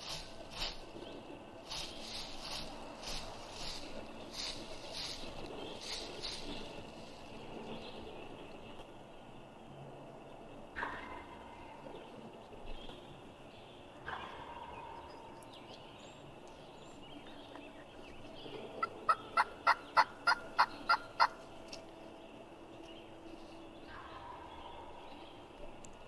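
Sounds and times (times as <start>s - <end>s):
turkey gobbling: 18.8s - 21.4s
turkey yelps: 18.8s - 21.4s.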